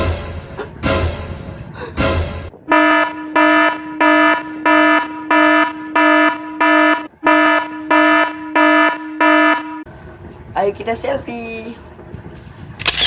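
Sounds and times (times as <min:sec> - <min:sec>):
continuous electronic tone: 0:02.5 - 0:09.9
buzzy alarm beeps: 0:02.7 - 0:09.9.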